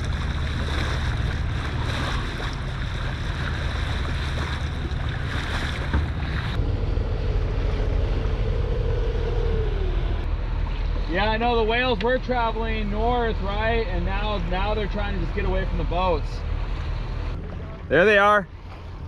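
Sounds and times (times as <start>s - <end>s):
wind on microphone: 0.0s - 11.1s
faint humming tone: 0.0s - 13.6s
boat motor running: 0.0s - 19.0s
water washing past hull: 0.0s - 19.0s.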